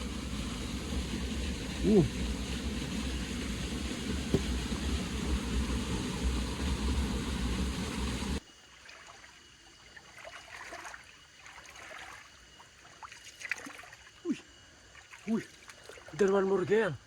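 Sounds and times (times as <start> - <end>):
flowing river water rushing: 0.0 - 9.1.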